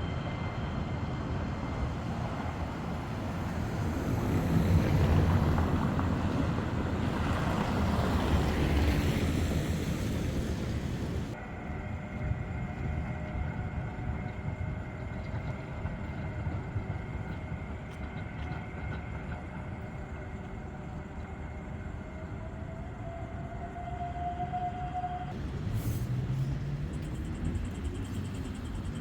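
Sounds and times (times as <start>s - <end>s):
vehicle engine rumbling: 5.1s - 11.4s, 25.3s - 29.0s.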